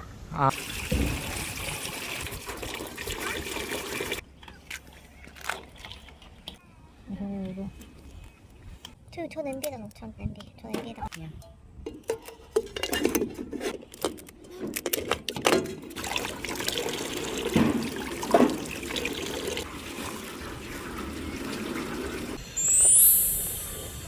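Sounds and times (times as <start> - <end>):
water splashing into a pot: 0.5 - 4.2, 16.0 - 22.4
high-pitched rising sweep: 22.4 - 24.0.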